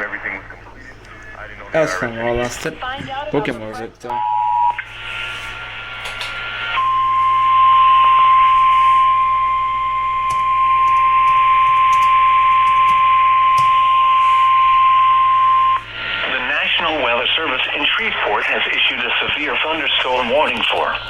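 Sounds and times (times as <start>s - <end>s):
radio hiss: 0.0s - 3.4s, 13.7s - 21.0s
steady alarm tone: 4.2s - 21.0s
two-tone attention signal: 6.8s - 15.8s.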